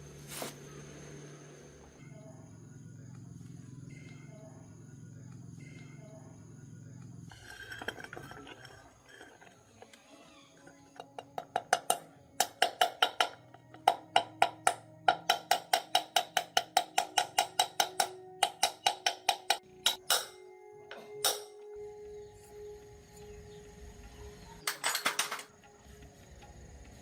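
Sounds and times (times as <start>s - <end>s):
sharp ringing taps: 10.9s - 21.6s.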